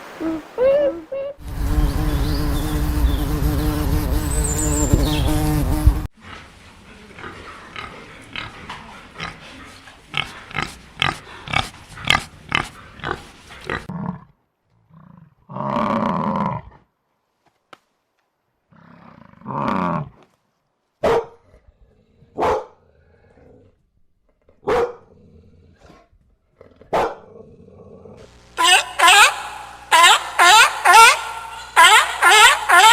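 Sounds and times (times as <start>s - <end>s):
animal grunts and calls: 6.2s - 16.9s.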